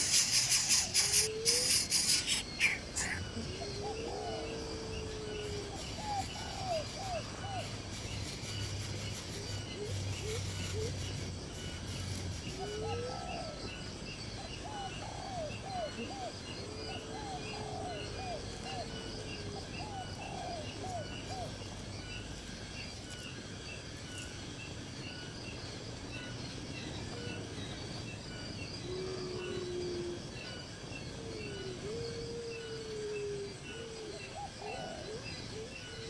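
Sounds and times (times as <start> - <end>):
birds calling: 0.0 - 4.7
insects chirping: 0.0 - 36.0.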